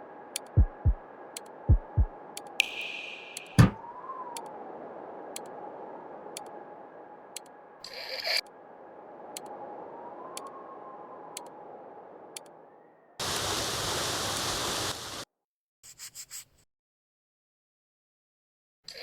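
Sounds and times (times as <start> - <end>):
clock ticking: 0.3 - 3.8
rushing noise bursts: 13.2 - 15.2.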